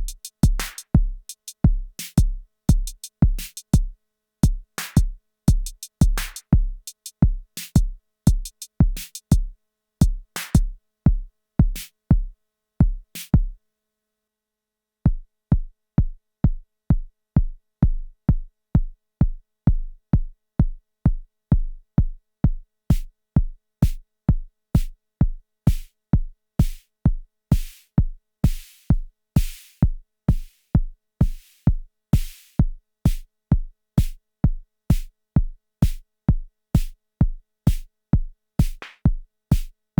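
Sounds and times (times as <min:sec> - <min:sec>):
hi-hat hits: 0:00.0 - 0:10.8
drum machine beat: 0:00.0 - 0:13.6, 0:26.6 - 0:26.8, 0:27.5 - 0:27.8, 0:28.4 - 0:30.6, 0:31.2 - 0:31.6, 0:32.2 - 0:33.3, 0:34.9 - 0:35.1, 0:35.8 - 0:36.0, 0:36.8 - 0:37.0, 0:37.7 - 0:39.7.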